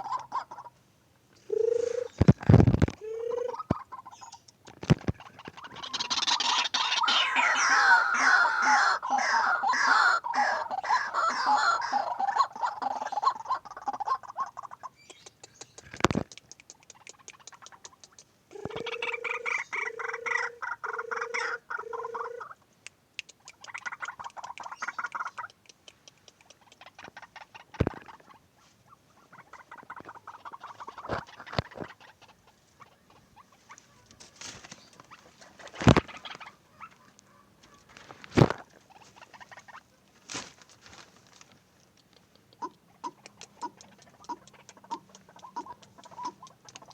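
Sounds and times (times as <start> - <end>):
birds calling: 0.0 - 41.0, 41.9 - 46.9
rapid ticking bird chatter: 3.5 - 22.3, 23.2 - 28.5, 41.8 - 46.9.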